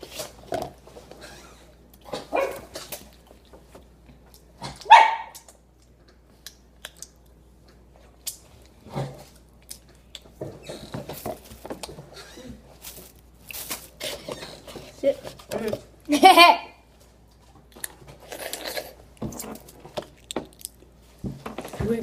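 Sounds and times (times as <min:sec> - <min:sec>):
dog barking: 0:02.3 - 0:02.7, 0:04.8 - 0:05.4.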